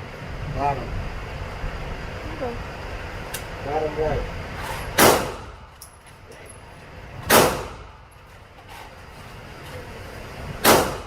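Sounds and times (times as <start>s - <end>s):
echoing gunshots: 5.0s - 5.6s, 7.3s - 8.0s, 10.6s - 11.0s.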